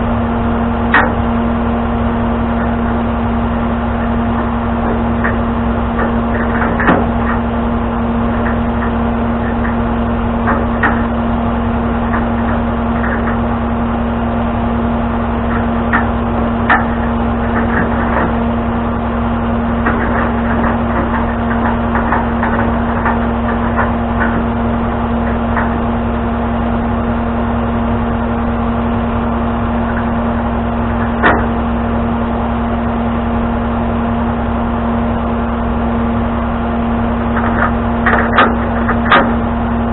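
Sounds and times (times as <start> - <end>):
truck engine humming: 0.0 - 39.9
metallic clanks and knocks: 0.9 - 1.3, 4.0 - 7.6, 8.2 - 13.6, 15.4 - 18.6, 19.7 - 26.0, 29.8 - 31.6, 37.2 - 39.5.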